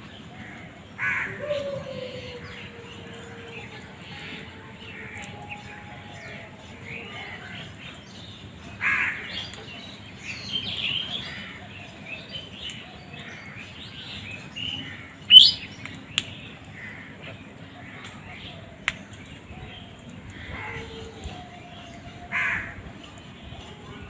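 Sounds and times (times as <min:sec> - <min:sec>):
birds chirping: 0:00.0 - 0:24.0
crows cawing: 0:00.4 - 0:01.6, 0:08.8 - 0:09.3, 0:22.3 - 0:22.8.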